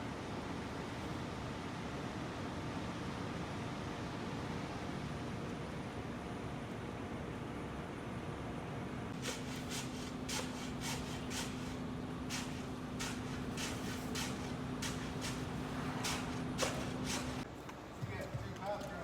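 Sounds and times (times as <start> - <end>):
broom sweeping concrete floor: 9.2 - 17.5
truck engine humming: 9.2 - 17.5.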